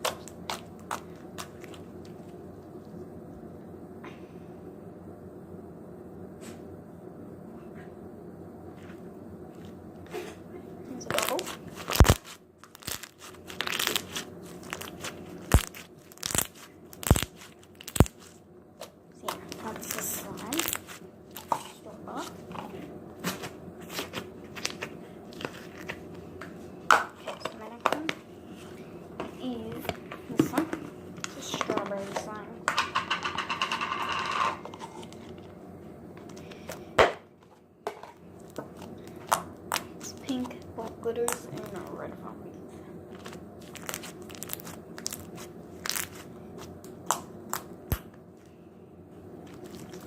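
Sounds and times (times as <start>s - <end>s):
slime squishing and crackling: 0.0s - 2.2s, 10.9s - 21.5s, 23.2s - 26.2s, 38.4s - 42.0s, 43.1s - 47.7s, 49.5s - 50.0s
slime squished in hands: 43.1s - 48.0s.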